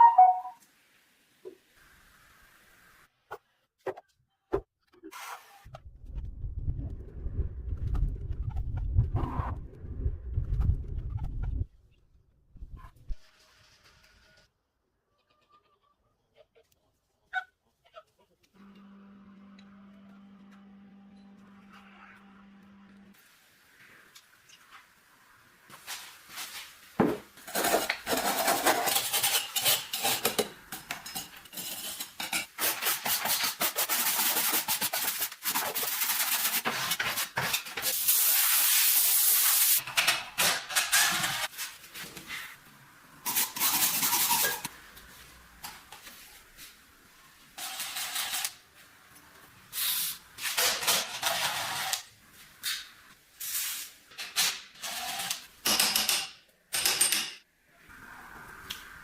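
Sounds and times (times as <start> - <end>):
hand tools scraping metal: 27.4 - 34.6.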